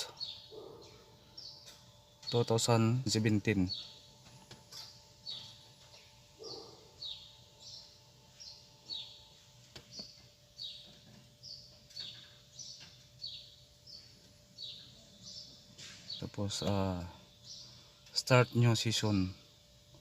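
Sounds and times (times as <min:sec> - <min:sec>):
small bird chirping: 0:00.0 - 0:19.4
low background hum: 0:00.0 - 0:20.0.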